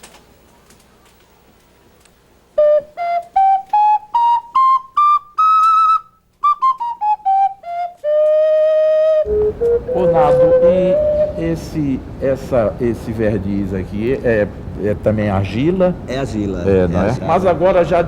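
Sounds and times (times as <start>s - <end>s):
clay ocarina playing a scale: 2.6s - 12.0s.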